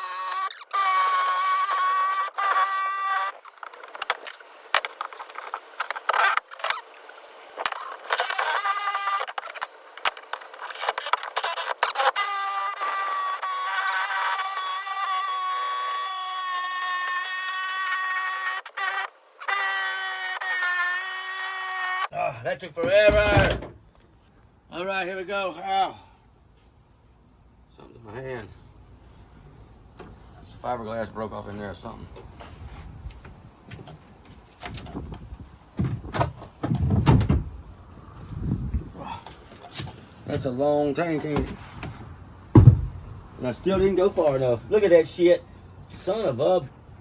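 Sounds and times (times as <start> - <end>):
electric power saw cutting: 0.0 - 22.1
heavy thuds: 22.8 - 23.8, 41.3 - 44.0
boat deck panel scraping and knocking: 35.8 - 37.5, 42.6 - 43.9.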